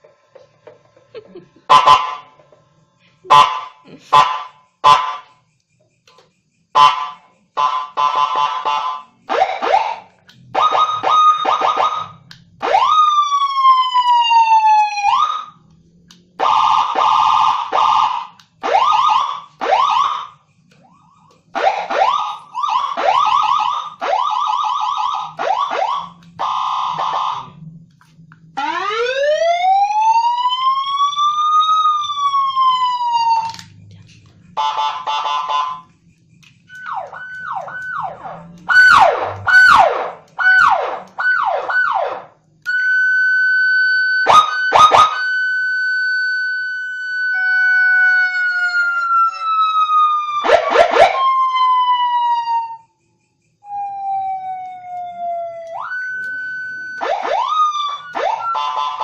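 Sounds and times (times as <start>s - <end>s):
electronic siren: 1.7s - 2.4s, 3.3s - 59.0s.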